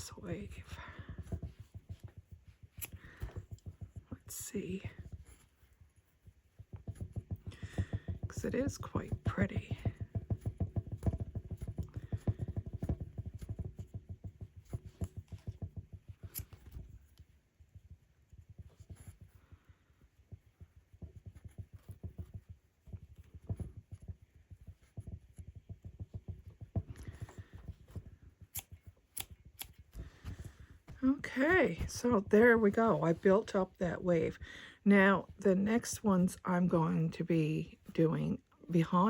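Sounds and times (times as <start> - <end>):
rug hook thumping and pulling: 20.7 - 33.8.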